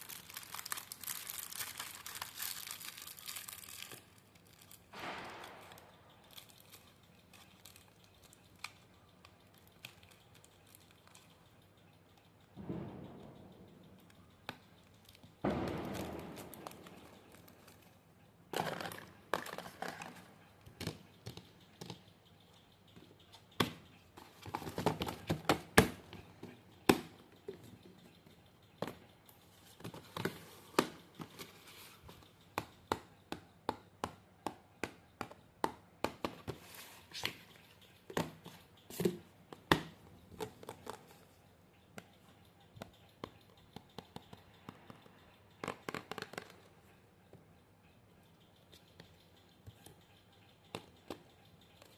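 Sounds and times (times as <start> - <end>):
paper pieces tapping and clicking: 0.0 - 11.4, 18.5 - 22.1, 22.9 - 28.0, 29.7 - 41.2, 42.8 - 46.8.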